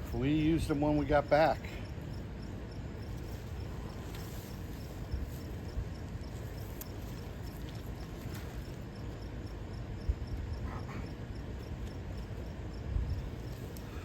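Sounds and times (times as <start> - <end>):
insect chirping: 0.0 - 14.0
steady low rumble: 0.0 - 14.0.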